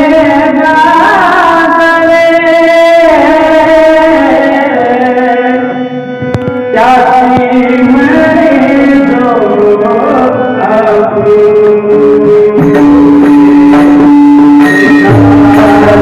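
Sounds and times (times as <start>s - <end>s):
person singing long notes: 0.0s - 16.0s
sustained accompaniment tones: 11.1s - 16.0s
drum strokes: 12.6s - 16.0s.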